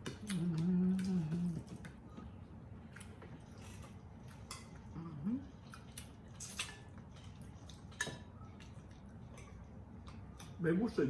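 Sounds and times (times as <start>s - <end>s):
wet chewing clicks and smacks: 5.6s - 10.6s.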